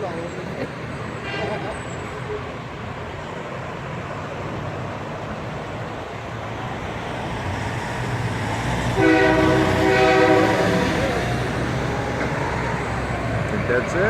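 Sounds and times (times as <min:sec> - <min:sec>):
truck engine rumbling: 0:00.0 - 0:14.0
air horn blast: 0:09.0 - 0:11.2.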